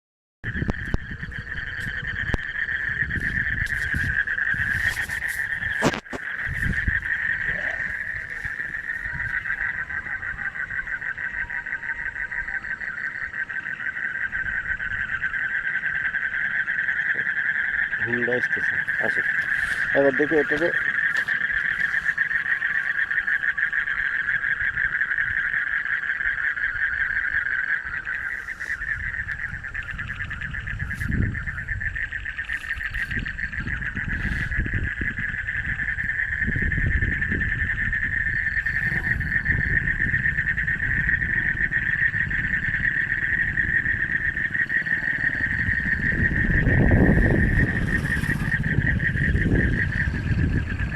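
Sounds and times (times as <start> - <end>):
frogs trilling: 0.4 - 50.9
low rumble: 28.0 - 50.9.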